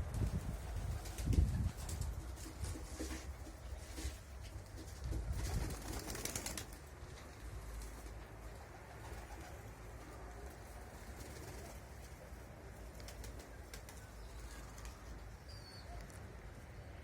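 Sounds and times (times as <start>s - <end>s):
wind rumble on microphone: 0.0s - 2.8s, 4.8s - 5.8s.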